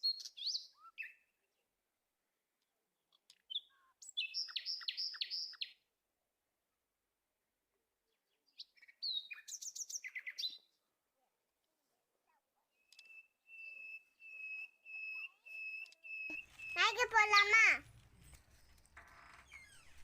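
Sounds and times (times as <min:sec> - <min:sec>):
small bird chirping: 0:00.0 - 0:01.5, 0:03.1 - 0:05.8, 0:08.1 - 0:10.8, 0:12.6 - 0:20.0.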